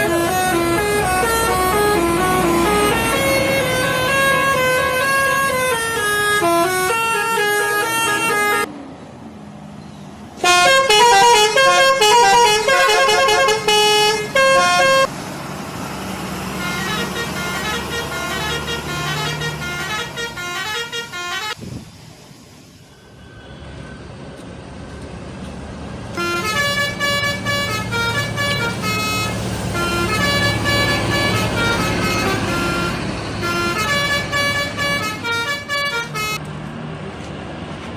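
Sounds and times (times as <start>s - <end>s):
bus trumpet horns: 0.0s - 8.7s, 10.4s - 15.1s, 16.5s - 21.6s, 26.1s - 36.5s
engine and road noise: 0.0s - 37.9s.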